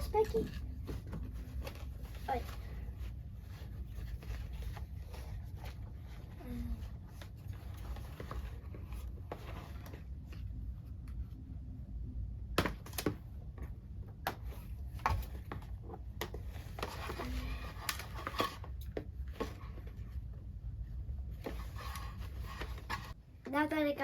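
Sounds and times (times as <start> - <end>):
box and packaging handled: 0.0 - 11.1, 12.5 - 20.3.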